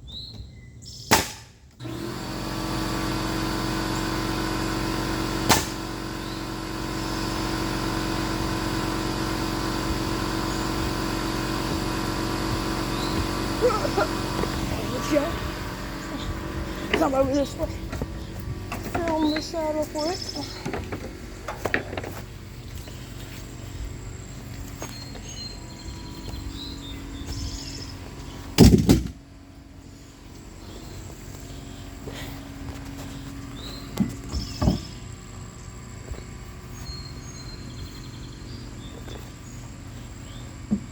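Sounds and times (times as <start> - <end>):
birds chirping: 0.0 - 1.8, 3.1 - 40.9
steady low hum: 0.0 - 40.9
sharp knock: 1.1 - 1.5
motor running: 1.2 - 40.9.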